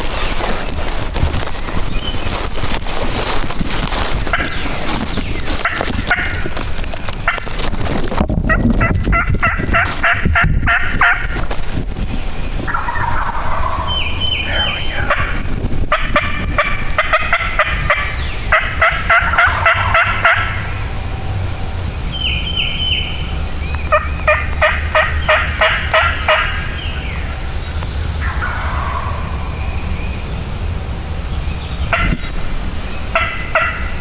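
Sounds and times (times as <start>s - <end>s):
turkey calling: 4.3s - 6.6s, 12.3s - 21.0s, 22.2s - 30.2s, 31.9s - 32.4s, 33.1s - 34.0s.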